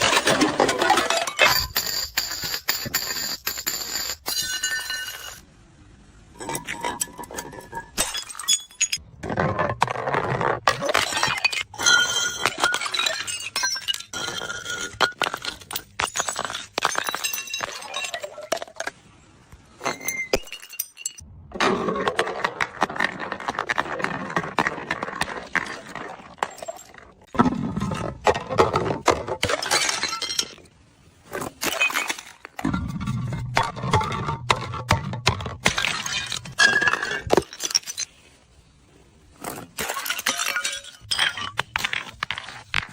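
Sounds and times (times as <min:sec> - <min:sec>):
glass bottles smashing: 0:00.0 - 0:05.4, 0:06.4 - 0:09.1, 0:10.7 - 0:18.9, 0:19.8 - 0:22.2, 0:25.6 - 0:30.7, 0:31.4 - 0:38.2, 0:39.4 - 0:42.3
glass shards clinking: 0:00.0 - 0:05.4, 0:06.4 - 0:09.0, 0:11.0 - 0:18.5, 0:39.8 - 0:41.6
glass crunching: 0:10.7 - 0:18.8, 0:39.8 - 0:42.9.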